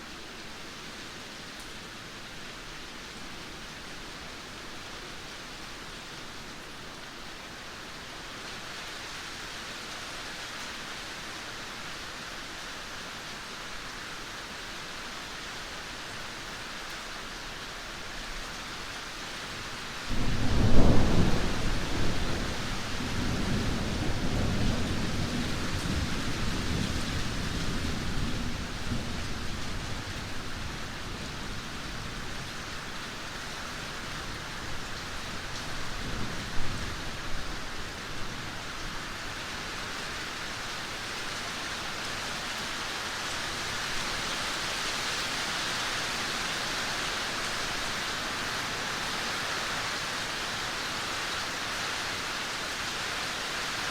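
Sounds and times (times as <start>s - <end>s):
heavy rain falling: 0.0s - 53.9s
thunder clap and rumble: 20.1s - 29.2s.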